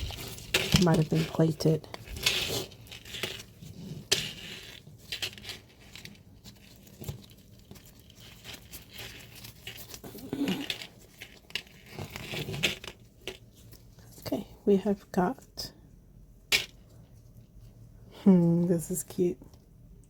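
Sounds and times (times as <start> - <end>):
plastic bags crinkling: 0.0 - 14.2.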